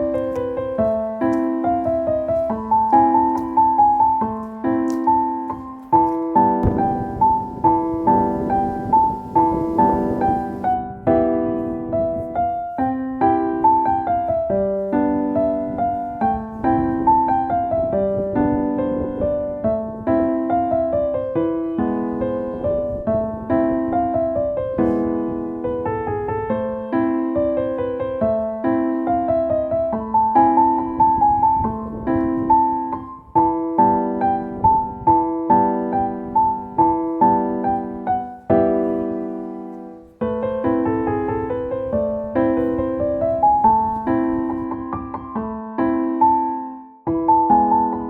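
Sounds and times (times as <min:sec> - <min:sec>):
gentle piano melody: 0:00.0 - 0:48.0.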